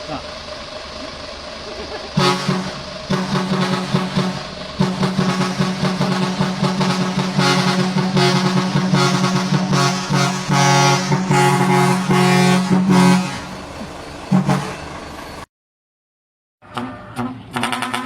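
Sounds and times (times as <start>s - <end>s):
deep air horn blasts: 2.2s - 13.7s, 14.3s - 15.0s.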